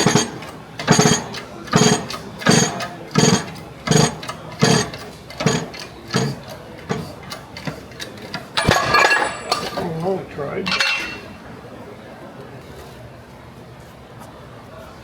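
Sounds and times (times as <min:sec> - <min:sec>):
hydraulic press metallic clanks: 0:00.0 - 0:11.5.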